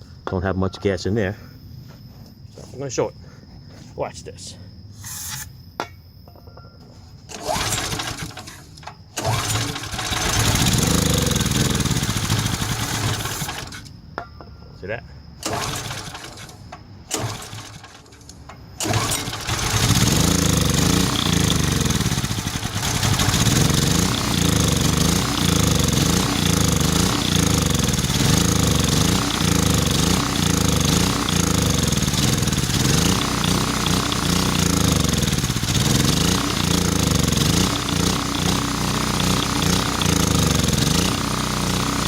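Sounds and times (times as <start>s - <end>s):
generator engine running: 7.3s - 13.9s, 15.4s - 18.0s, 18.8s - 42.0s.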